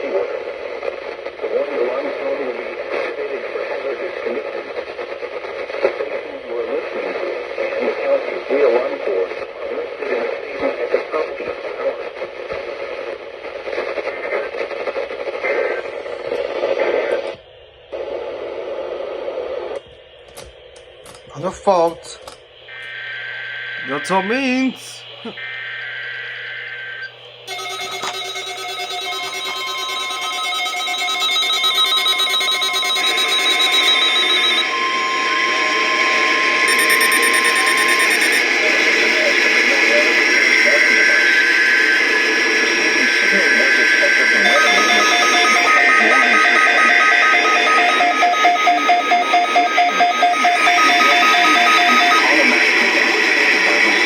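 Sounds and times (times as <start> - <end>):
radio hiss and static: 21.4 - 28.5, 32.8 - 54.0
pulsed buzzy alert tones: 27.5 - 35.4, 36.6 - 38.5, 42.7 - 54.0
steady alert tone: 27.5 - 38.6, 40.7 - 54.0.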